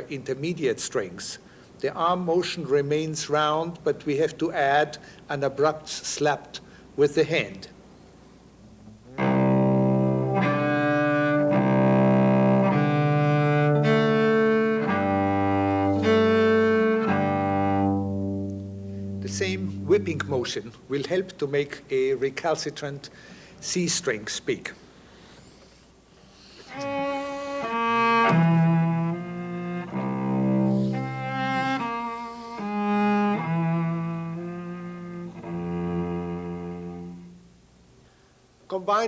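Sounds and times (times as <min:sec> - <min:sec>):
cello bowed notes: 0:08.8 - 0:20.7, 0:26.7 - 0:37.6.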